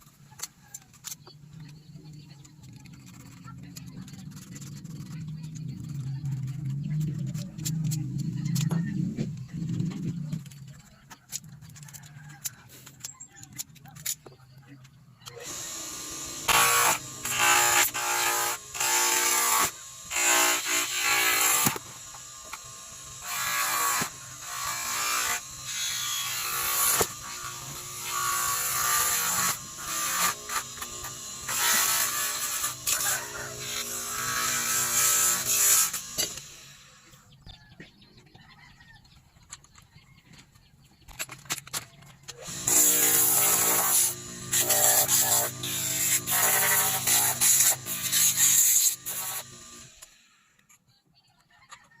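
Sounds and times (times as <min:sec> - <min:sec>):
power tool grinding metal: 0:15.3 - 0:37.2, 0:42.4 - 0:50.5.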